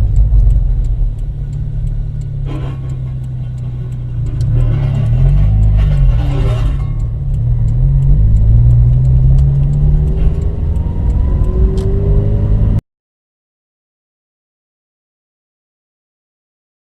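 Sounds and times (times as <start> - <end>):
engine revving: 0.0 - 12.8
light high ticking: 0.0 - 12.8.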